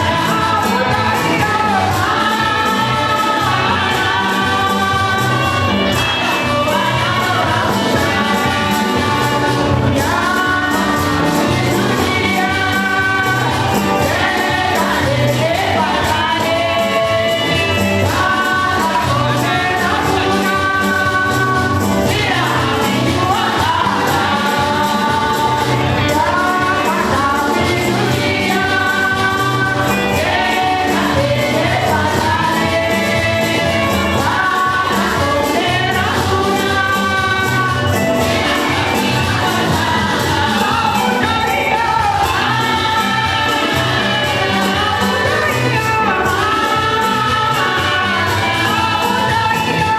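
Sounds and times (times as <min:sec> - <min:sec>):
choir singing gospel music: 0:00.0 - 0:49.9.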